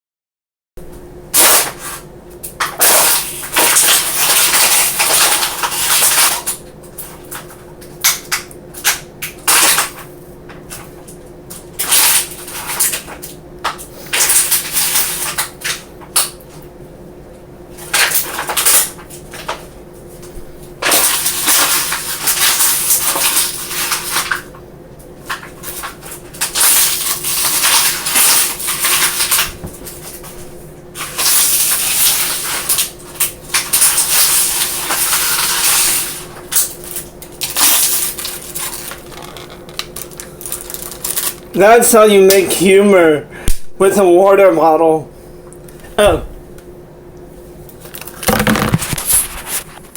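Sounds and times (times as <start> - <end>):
plastic bottle crackling: 36.6 - 41.6, 47.9 - 49.9.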